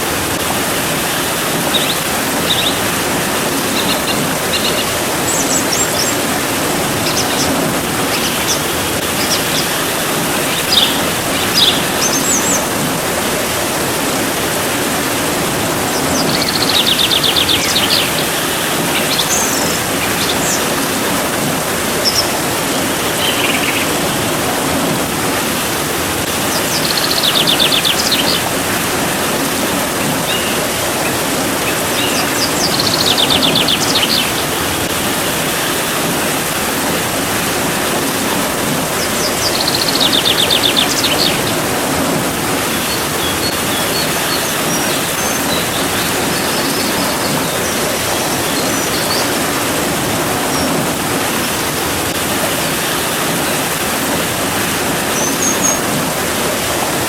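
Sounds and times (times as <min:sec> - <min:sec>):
steady rain hiss: 0:00.0 - 0:57.0
bird chirps: 0:01.7 - 0:03.0, 0:03.6 - 0:12.7, 0:15.9 - 0:21.0, 0:22.0 - 0:24.1, 0:26.5 - 0:28.5, 0:30.0 - 0:34.4, 0:39.0 - 0:41.6
bird rapid trill: 0:01.7 - 0:12.7, 0:15.8 - 0:21.1, 0:22.0 - 0:24.1, 0:26.5 - 0:28.5, 0:30.0 - 0:34.4.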